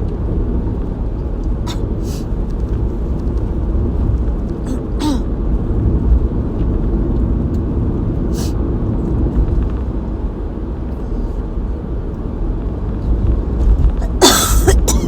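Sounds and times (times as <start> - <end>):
person coughing harshly: 1.7 - 2.2, 4.7 - 5.3, 14.0 - 15.0.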